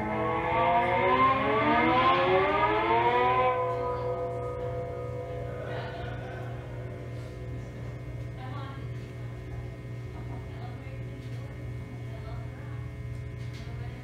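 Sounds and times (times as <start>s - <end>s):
sustained tone rising in pitch: 0.0s - 8.0s
constant low hum: 0.0s - 14.0s.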